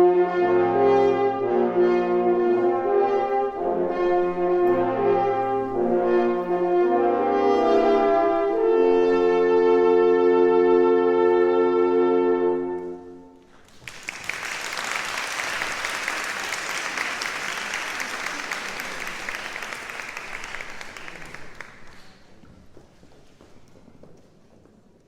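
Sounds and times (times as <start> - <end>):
french horns holding a chord: 0.0 - 13.4
audience applause: 13.6 - 22.4.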